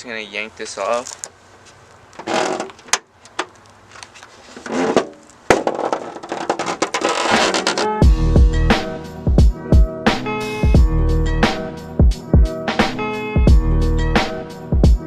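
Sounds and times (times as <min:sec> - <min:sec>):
metal clanks and scrapes: 0:04.4 - 0:08.0.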